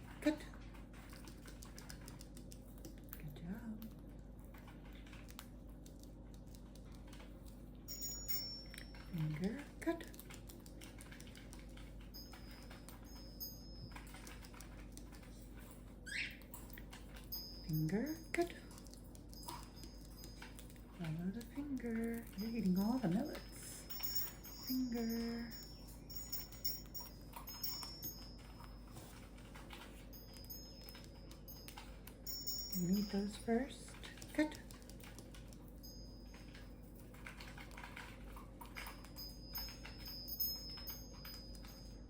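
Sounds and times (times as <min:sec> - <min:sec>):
thin high bird tones: 0:16.0 - 0:17.7.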